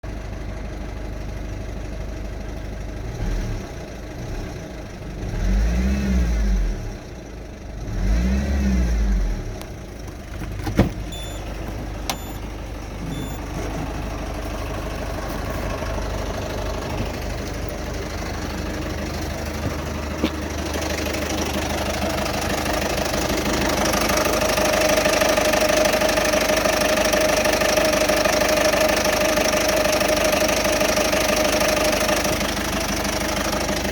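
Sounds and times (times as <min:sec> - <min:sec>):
diesel engine rough idle: 0:00.0 - 0:05.5, 0:06.3 - 0:33.9
engine revving: 0:03.0 - 0:07.1, 0:07.8 - 0:09.8.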